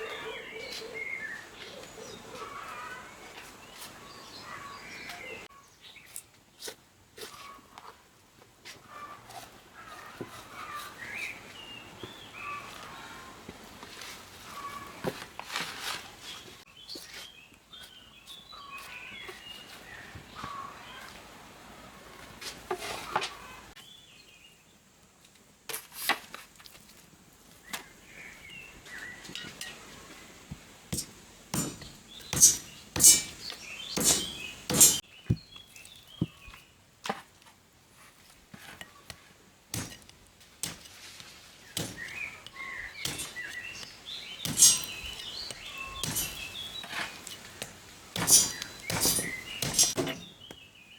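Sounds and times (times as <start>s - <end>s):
small birds chirping: 0.0s - 8.0s, 8.9s - 13.4s, 16.2s - 21.3s, 27.6s - 36.8s, 41.6s - 50.9s.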